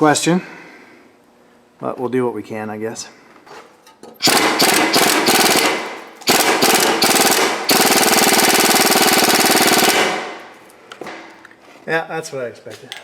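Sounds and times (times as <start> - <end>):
pneumatic air tool hammering: 4.2 - 11.4.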